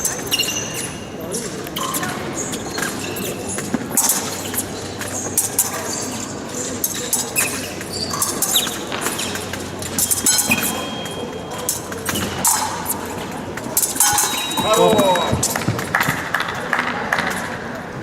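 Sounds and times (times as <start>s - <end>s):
fencing shoes squeaking: 0.0s - 16.1s
fencing blades clinking: 1.8s - 15.7s.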